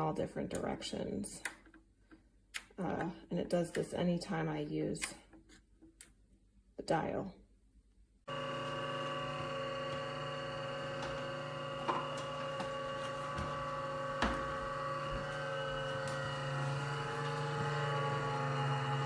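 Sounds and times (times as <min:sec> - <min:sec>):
air fryer fan humming: 0:08.3 - 0:19.0.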